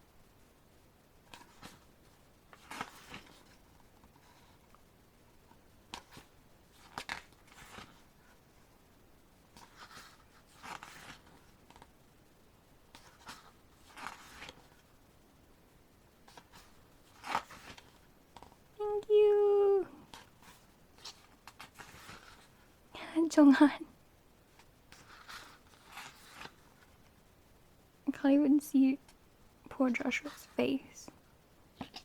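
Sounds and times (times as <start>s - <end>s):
paper pages rustling: 1.3s - 4.7s, 5.5s - 8.4s, 9.5s - 12.0s, 12.9s - 14.9s, 16.2s - 18.6s, 20.1s - 22.6s, 24.6s - 27.1s.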